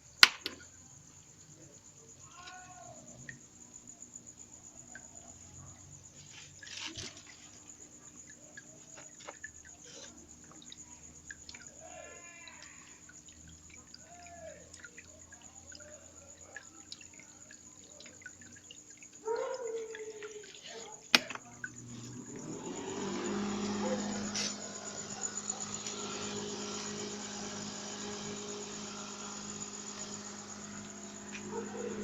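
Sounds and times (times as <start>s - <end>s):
water dripping and trickling: 0.0s - 32.0s
faint high whine: 21.2s - 32.0s
fan motor hum: 21.2s - 32.0s.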